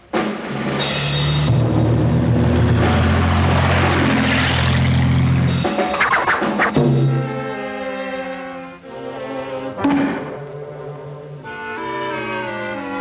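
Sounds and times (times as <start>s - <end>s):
engine-like rumbling noise: 0.3s - 13.0s
low held music notes: 6.7s - 13.0s.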